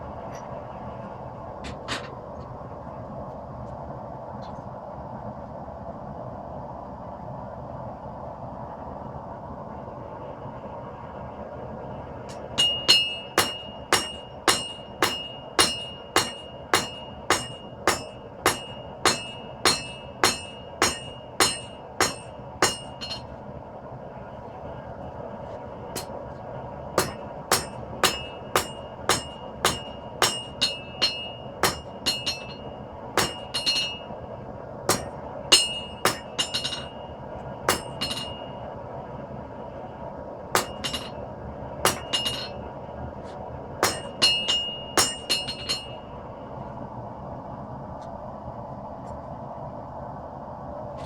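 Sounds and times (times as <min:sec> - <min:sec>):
steady background hum: 0:00.0 - 0:51.0
hammer striking steel on anvil: 0:12.3 - 0:23.3, 0:26.0 - 0:26.2, 0:27.0 - 0:34.2, 0:34.9 - 0:38.6, 0:40.6 - 0:41.2, 0:41.8 - 0:42.6, 0:43.8 - 0:46.1.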